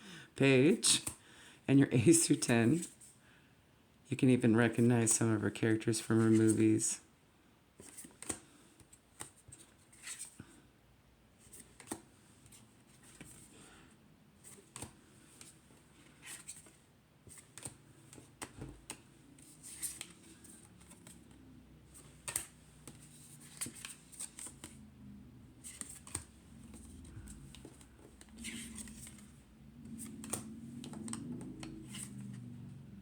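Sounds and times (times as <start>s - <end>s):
cards scraping: 14.5s - 32.4s
cards clicking on tabletop: 20.8s - 24.8s, 25.6s - 29.3s, 29.9s - 32.3s.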